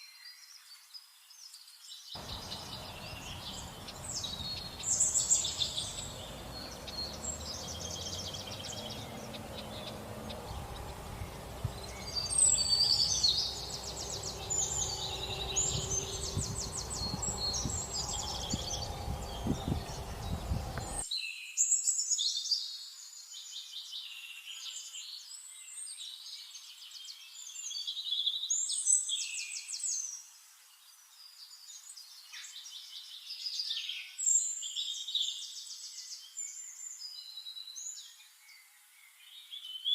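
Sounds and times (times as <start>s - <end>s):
sparrows chirping: 1.5s - 21.1s
low background rumble: 2.2s - 21.0s.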